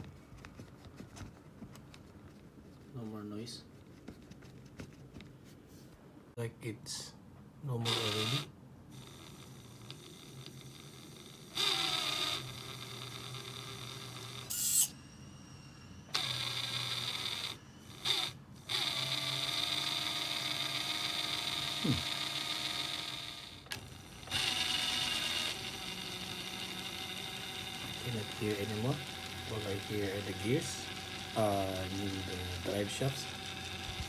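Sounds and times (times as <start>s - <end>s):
electric motor and gears whining: 7.8s - 34.0s.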